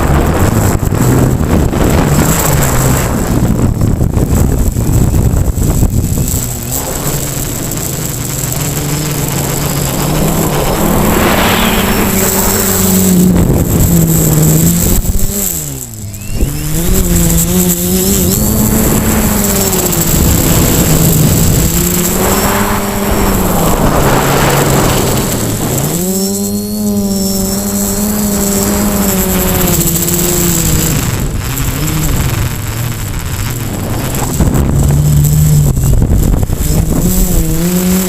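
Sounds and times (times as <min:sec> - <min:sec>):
quadcopter motors whining: 0:00.0 - 0:38.0
rush of air: 0:09.4 - 0:17.4, 0:18.4 - 0:26.1, 0:30.7 - 0:37.5.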